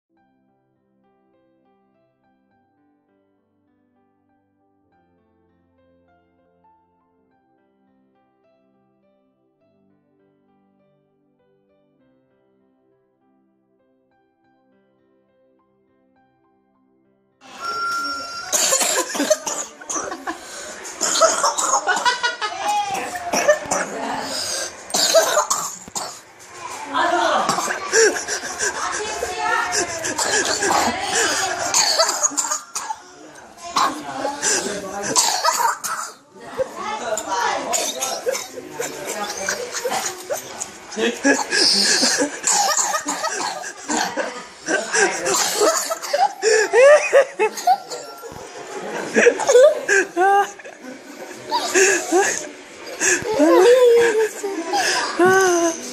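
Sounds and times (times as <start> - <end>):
person coughing: 18.5 - 20.4, 21.0 - 26.2, 27.4 - 33.0, 33.8 - 36.2, 41.2 - 48.0, 51.6 - 52.4.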